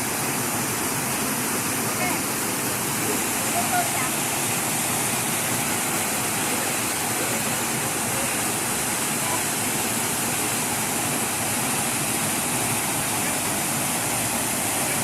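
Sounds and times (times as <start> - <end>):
waterfall roaring: 0.0 - 15.0.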